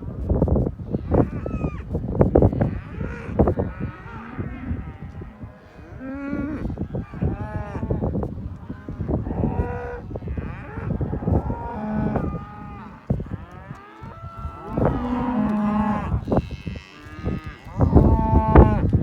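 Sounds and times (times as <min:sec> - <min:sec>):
cattle mooing: 0:02.6 - 0:19.0.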